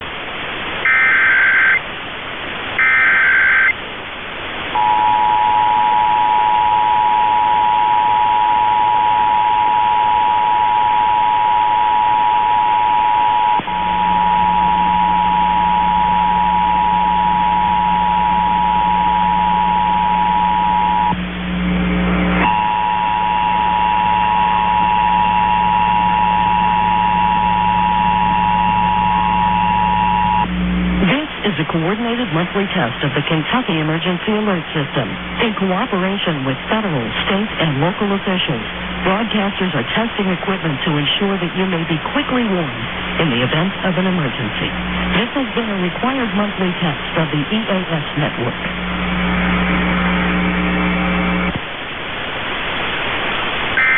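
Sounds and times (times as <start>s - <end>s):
digital data bursts: 0.8s - 1.8s, 2.8s - 3.8s
low hum: 4.6s - 51.9s
two-note alarm tone: 4.8s - 21.2s, 22.4s - 30.5s.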